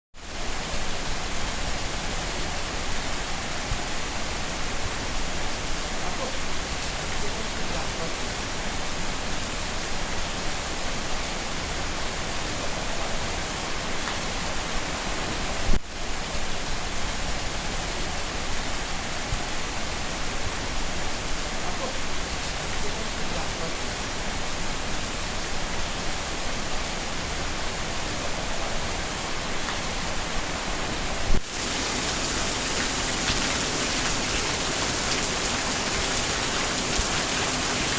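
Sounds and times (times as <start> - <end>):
steady rain falling: 0.2 - 37.9.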